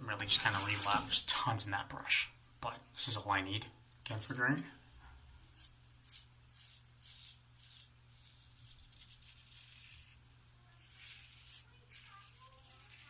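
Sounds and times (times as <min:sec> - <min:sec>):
razor scraping lathered face: 0:00.4 - 0:01.1, 0:05.6 - 0:13.0.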